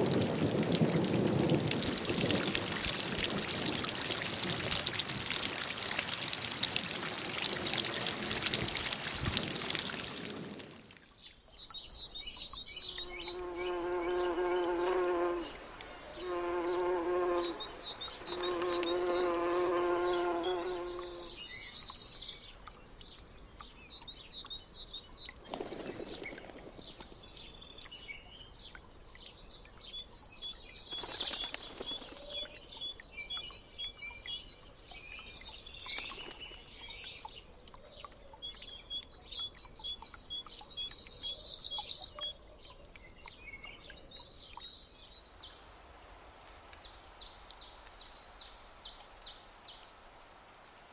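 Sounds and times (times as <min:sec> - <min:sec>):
small songbirds chirping: 0:00.0 - 0:50.9
insect buzzing: 0:13.1 - 0:21.3.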